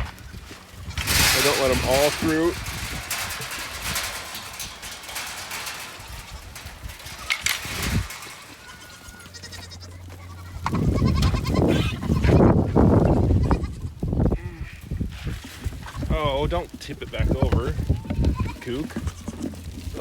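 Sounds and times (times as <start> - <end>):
goats bleating: 0.0 - 15.0, 17.4 - 20.0
light clatter: 0.6 - 11.4, 15.1 - 20.0.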